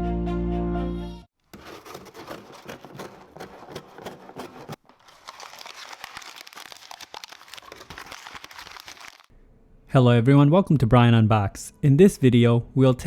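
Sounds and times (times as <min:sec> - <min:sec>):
packaging crinkling: 0:01.5 - 0:09.3.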